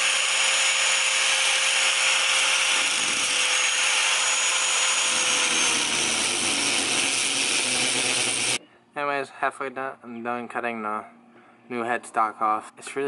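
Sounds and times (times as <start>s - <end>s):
angle grinder cutting metal: 0.0s - 8.6s.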